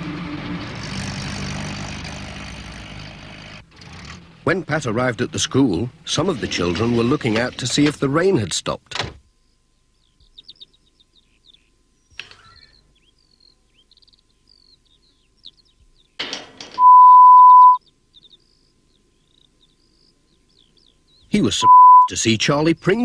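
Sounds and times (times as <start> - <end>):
faint birdsong: 8.4 - 23.0
censor bleep: 16.8 - 17.8, 21.6 - 22.1.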